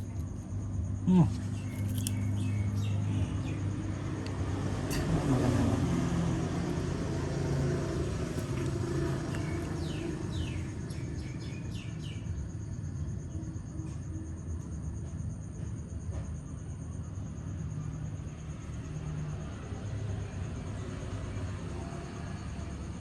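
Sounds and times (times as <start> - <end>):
low vehicle rumble: 0.0 - 12.5.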